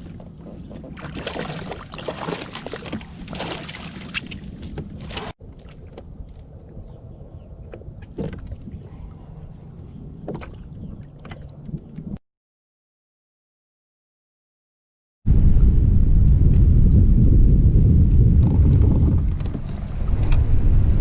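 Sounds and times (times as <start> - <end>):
water splashing against kayak: 0.0 - 6.4.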